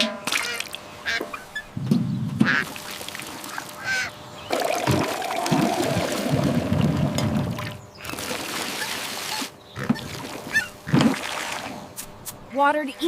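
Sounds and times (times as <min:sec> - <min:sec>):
duck quacking: 0:02.4 - 0:02.9, 0:03.5 - 0:04.2
poured water splashing: 0:04.5 - 0:09.3.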